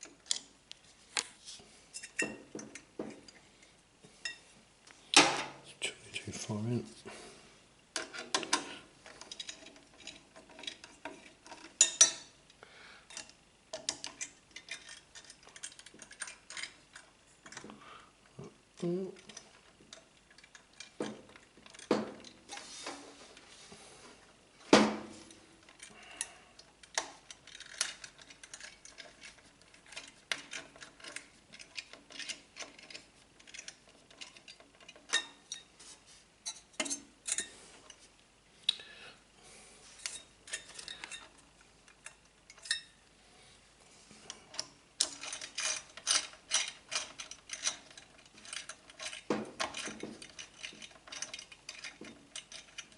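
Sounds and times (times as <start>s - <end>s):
small parts clicking and tapping: 0.0s - 1.3s, 7.9s - 22.7s, 25.2s - 35.7s, 36.4s - 38.1s, 40.0s - 42.9s, 44.2s - 52.9s.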